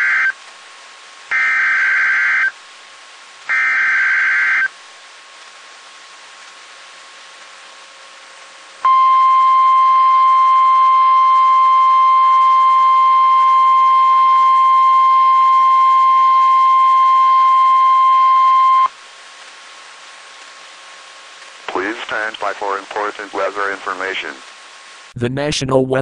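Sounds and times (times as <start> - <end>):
low hiss: 0.0 - 25.7.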